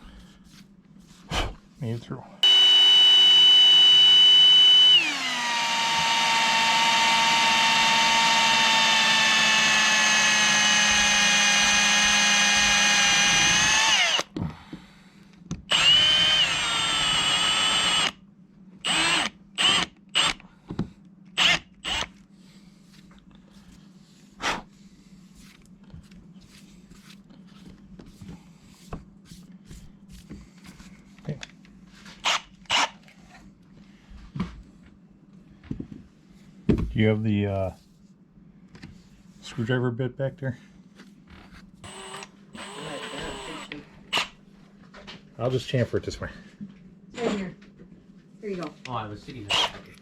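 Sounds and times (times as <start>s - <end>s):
cordless drill whining: 2.4s - 14.3s, 15.7s - 18.2s, 18.8s - 20.4s, 21.4s - 22.1s, 32.2s - 32.9s, 41.8s - 44.3s, 49.5s - 49.9s.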